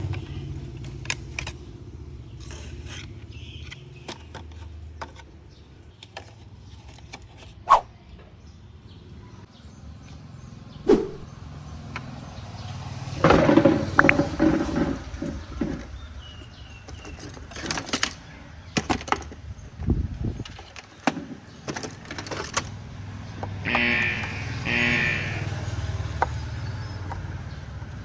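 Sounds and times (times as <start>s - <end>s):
clattering and rustling: 13.1s - 19.5s, 20.4s - 23.6s.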